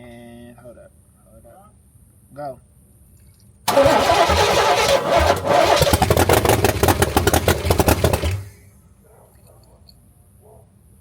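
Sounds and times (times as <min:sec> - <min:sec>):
car engine cranking on starter: 0:03.7 - 0:08.6.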